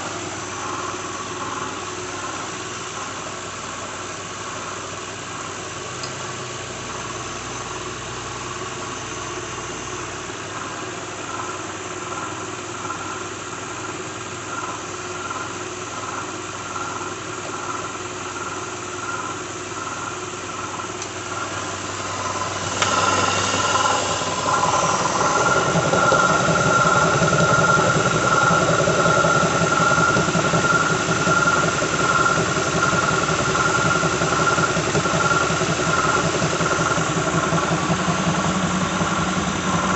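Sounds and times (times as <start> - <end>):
engine rattle: 16.0 - 39.9
car engine idling: 20.5 - 39.9.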